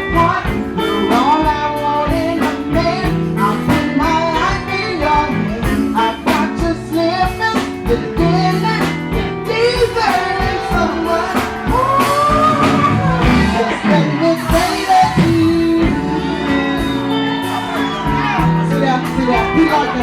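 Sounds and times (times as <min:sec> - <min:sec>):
live blues band playing: 0:00.0 - 0:20.0
woman singing: 0:00.0 - 0:20.0
drum hits: 0:09.1 - 0:16.2.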